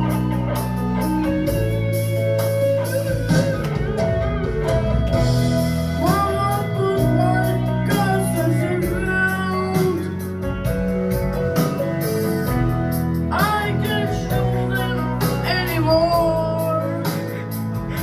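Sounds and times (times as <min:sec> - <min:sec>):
guitar rock music with drums: 0:00.0 - 0:18.0.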